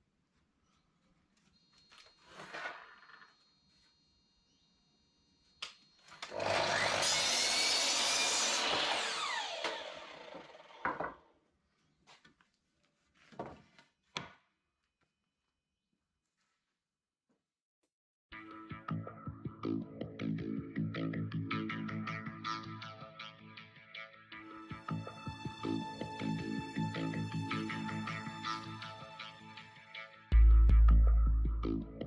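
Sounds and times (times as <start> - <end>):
power tool cutting wood: 6.2 - 11.2.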